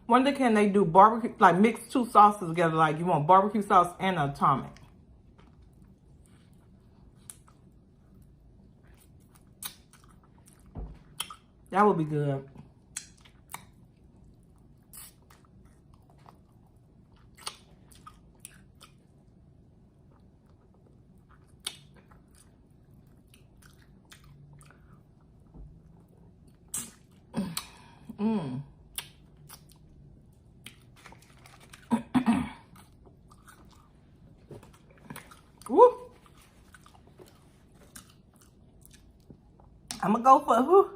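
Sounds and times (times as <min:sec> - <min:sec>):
chewing and crunching: 0:04.6 - 0:11.7, 0:12.6 - 0:27.8, 0:28.9 - 0:32.0, 0:32.6 - 0:40.0.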